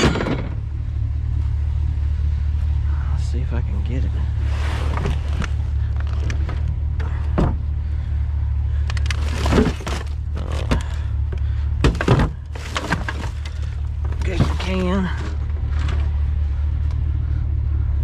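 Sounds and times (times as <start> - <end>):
low engine hum: 0.0 - 18.0
items clattering in trash can: 9.0 - 11.0, 11.8 - 16.0.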